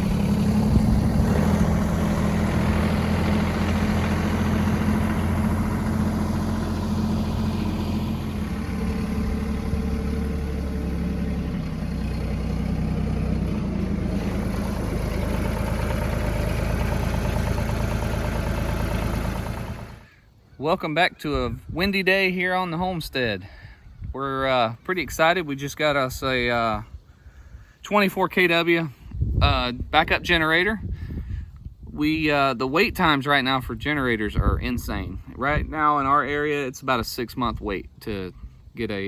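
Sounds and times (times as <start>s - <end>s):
engine idling: 0.0s - 20.1s.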